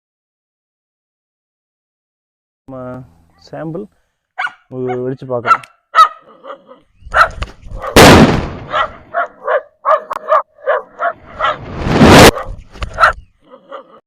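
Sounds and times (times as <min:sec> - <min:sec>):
dog barking and yelping: 0:04.4 - 0:08.0, 0:08.6 - 0:14.0
firecracker blasts: 0:07.9 - 0:09.0, 0:11.6 - 0:12.5.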